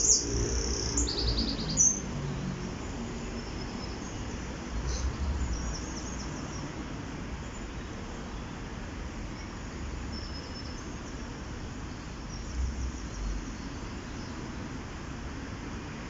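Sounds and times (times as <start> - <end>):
birds chirping: 0.0 - 2.0.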